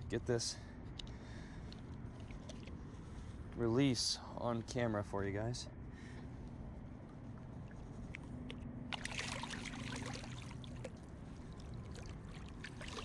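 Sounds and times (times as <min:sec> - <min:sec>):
low steady hum: 0:00.0 - 0:13.0
water splashing and trickling: 0:08.9 - 0:13.0.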